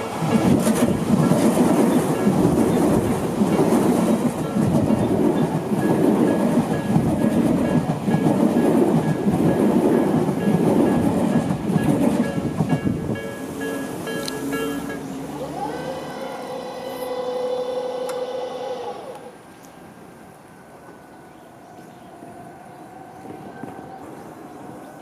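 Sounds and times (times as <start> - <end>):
train wheels rumbling on rail: 0.0 - 25.0.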